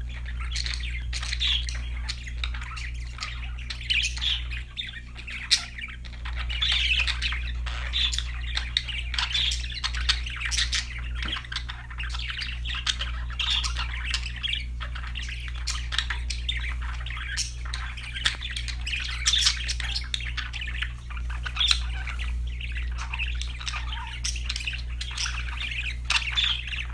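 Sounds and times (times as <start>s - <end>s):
budgerigars chirping and squawking: 0.0s - 26.9s
steady low hum: 0.0s - 26.9s.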